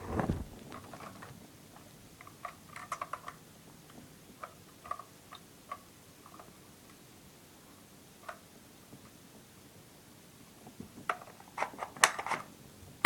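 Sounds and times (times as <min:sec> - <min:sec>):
plastic objects clicking: 0:00.6 - 0:03.4, 0:11.1 - 0:12.5.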